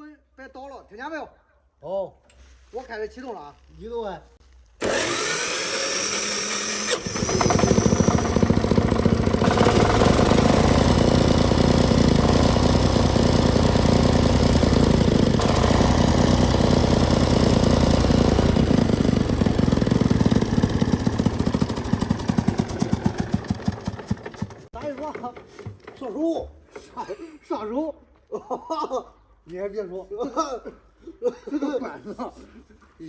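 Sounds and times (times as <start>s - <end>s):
tractor engine chugging: 6.9s - 24.7s.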